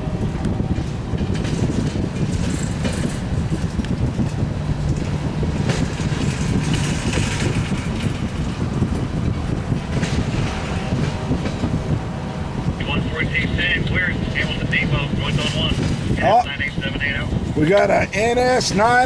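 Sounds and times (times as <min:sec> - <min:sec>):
train cars clanking: 0:00.0 - 0:19.0
train cars rumbling on rails: 0:00.0 - 0:19.0.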